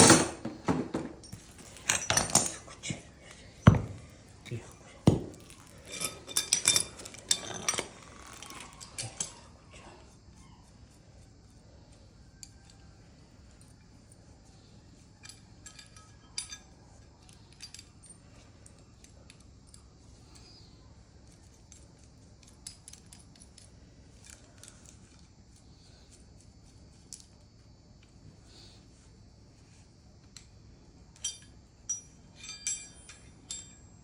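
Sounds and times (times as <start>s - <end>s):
metal tools clinking: 0.0s - 9.6s, 15.2s - 18.4s, 31.2s - 34.0s
faint low hum: 0.1s - 34.0s.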